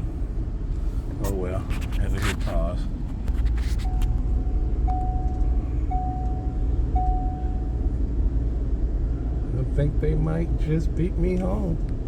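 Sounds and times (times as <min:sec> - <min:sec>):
electronic warning chime: 0:05.9 - 0:07.6.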